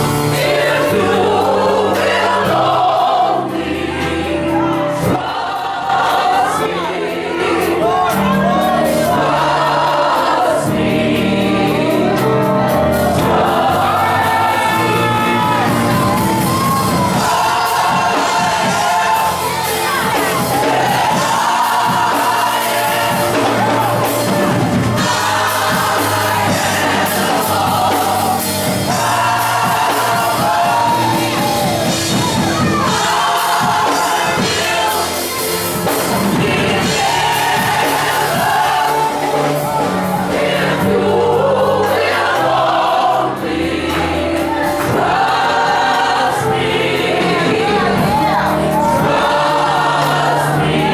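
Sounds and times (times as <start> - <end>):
gospel choir singing: 0.0 - 50.9
keyboard: 0.0 - 50.9
percussion: 0.0 - 50.9.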